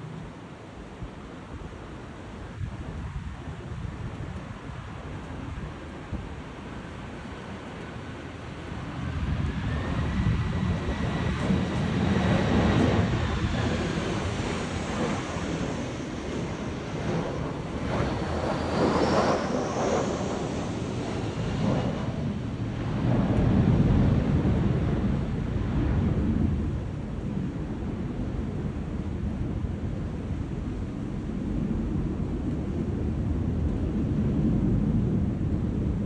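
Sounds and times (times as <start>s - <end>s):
wind buffeting microphone: 0.0s - 36.0s
jet engines whining: 8.4s - 26.1s.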